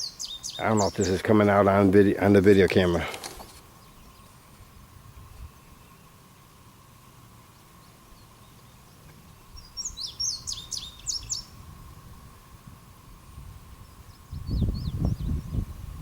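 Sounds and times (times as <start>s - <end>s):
songbird chirping: 0.0s - 3.0s, 3.7s - 11.6s
faint steady hum: 0.0s - 16.0s.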